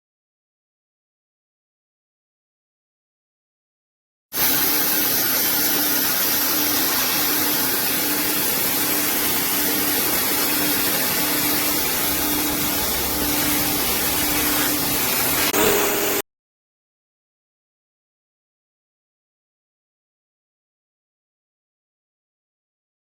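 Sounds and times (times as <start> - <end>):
pressure washer water jet hissing: 4.4 - 16.2
pulsing pump hum: 7.2 - 16.2.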